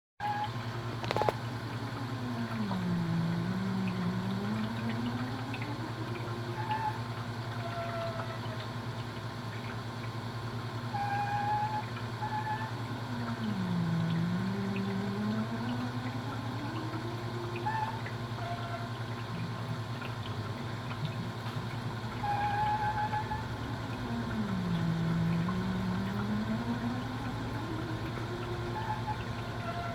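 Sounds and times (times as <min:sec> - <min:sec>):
ice maker humming: 0:00.2 - 0:29.9
gliding tone: 0:21.0 - 0:29.9.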